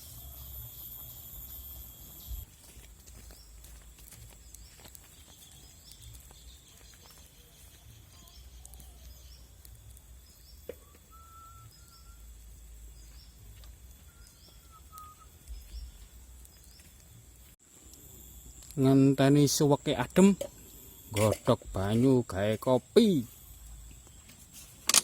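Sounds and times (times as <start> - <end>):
birds chirping: 0.0 - 24.6
steady high drone: 8.3 - 24.8
bird whistled notes: 10.2 - 13.2, 14.0 - 16.0.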